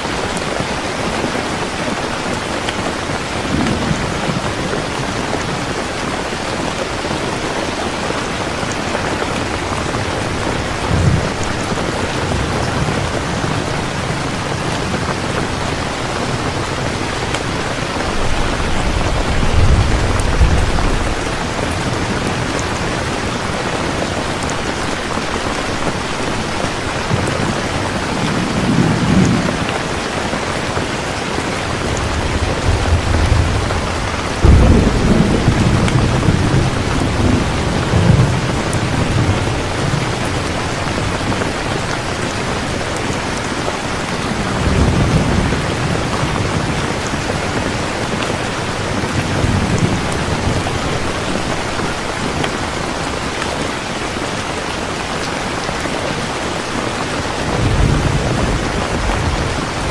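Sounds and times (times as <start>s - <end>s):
heavy rain: 0.0s - 59.9s
thunder rolling: 9.5s - 24.0s, 31.6s - 41.9s, 57.4s - 59.9s
loud thunderclap: 10.0s - 22.8s, 31.7s - 41.2s, 57.5s - 59.9s.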